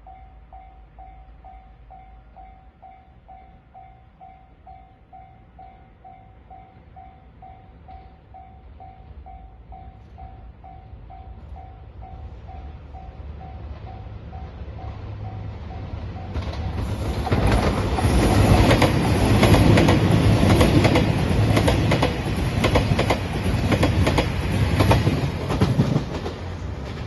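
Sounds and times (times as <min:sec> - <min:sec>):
level crossing warning bell: 0:00.0 - 0:17.0
train rumble: 0:00.0 - 0:27.0.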